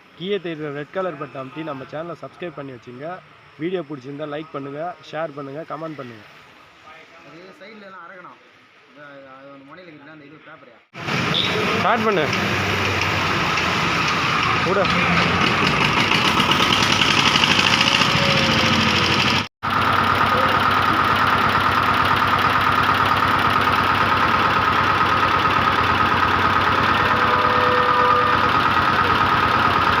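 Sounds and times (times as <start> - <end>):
diesel engine knocking: 11.9 - 30.0.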